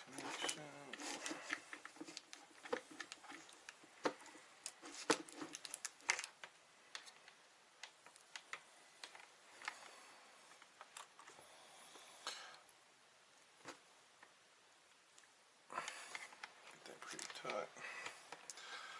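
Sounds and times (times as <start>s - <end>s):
small objects clicking and knocking: 0.0s - 9.9s.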